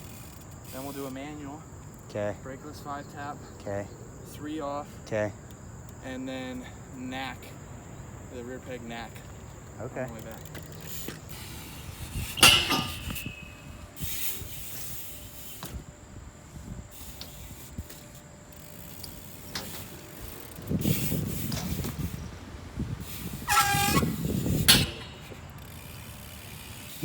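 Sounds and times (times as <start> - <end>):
bike tyres rumbling on concrete: 7.4 - 27.0
knocks from bike landings: 12.2 - 13.6, 23.5 - 25.7
short high squeal: 23.3 - 25.4.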